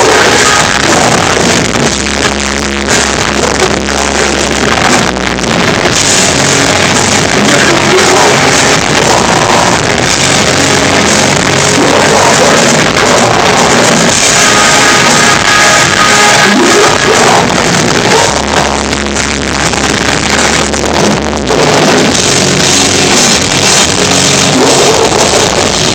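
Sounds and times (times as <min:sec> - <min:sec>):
live hardcore band playing: 0:00.0 - 0:25.9.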